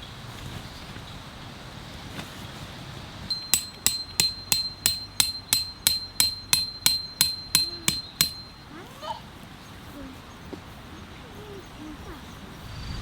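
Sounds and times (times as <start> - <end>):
hammer striking metal tent peg: 3.3 - 8.6
high metallic ringing: 3.3 - 8.8.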